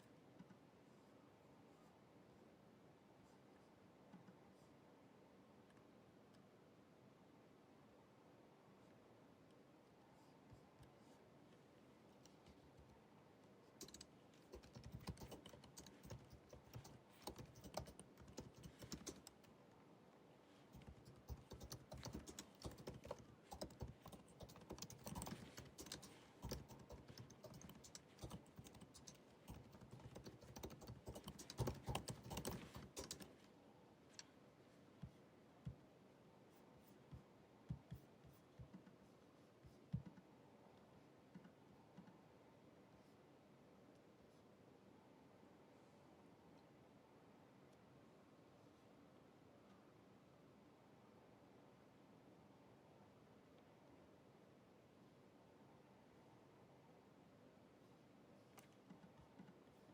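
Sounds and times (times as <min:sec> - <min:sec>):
laptop keyboard typing: 0:13.8 - 0:19.6, 0:20.7 - 0:33.4.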